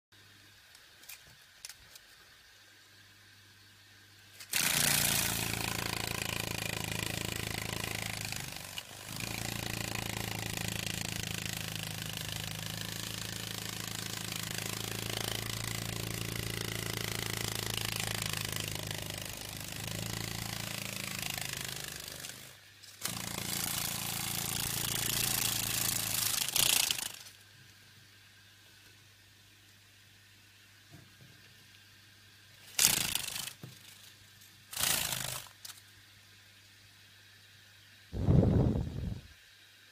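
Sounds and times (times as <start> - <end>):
large insect buzzing: 4.5 - 27.3, 32.7 - 33.6, 34.7 - 35.5, 38.2 - 39.3.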